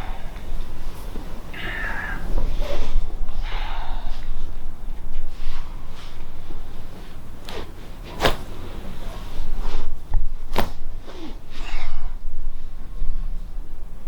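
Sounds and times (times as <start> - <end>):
person breathing: 0.0 - 7.8.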